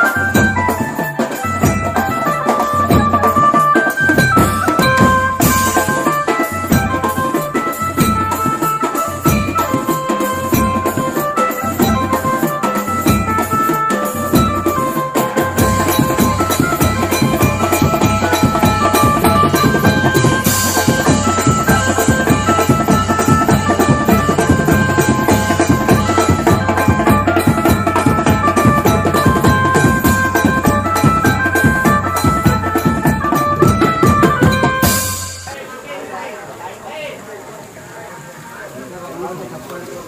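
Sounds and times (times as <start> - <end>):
melody line: 0.0 - 35.5
music with fast drum beat: 0.0 - 35.6.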